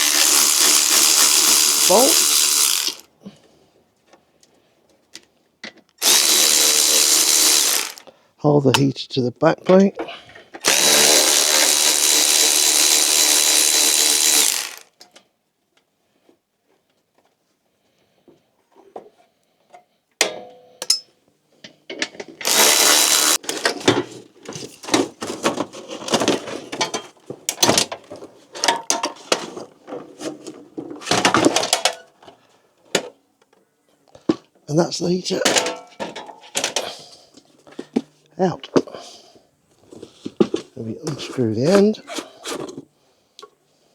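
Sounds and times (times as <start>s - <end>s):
power drill whining: 0.0s - 3.1s, 6.0s - 8.1s, 10.6s - 14.9s, 22.4s - 23.6s
metal parts clunking: 35.4s - 36.8s.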